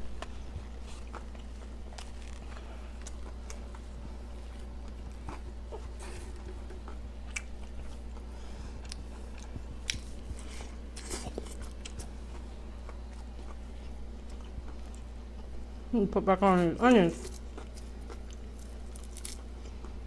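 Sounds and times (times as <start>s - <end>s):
person chewing food: 0.0s - 15.6s, 17.2s - 20.0s
steady low hum: 0.0s - 20.0s
crunchy crackles: 0.2s - 8.2s, 16.8s - 20.0s.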